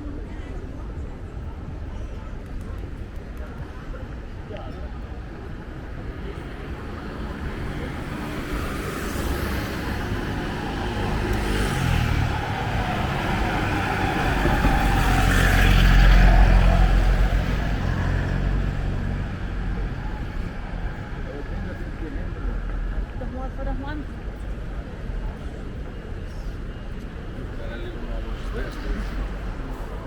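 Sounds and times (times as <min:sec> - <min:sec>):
vehicle passing by: 0:06.5 - 0:20.2.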